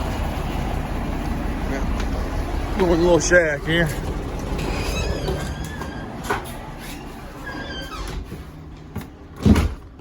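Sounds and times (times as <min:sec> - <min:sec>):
truck engine running: 0:00.0 - 0:04.8.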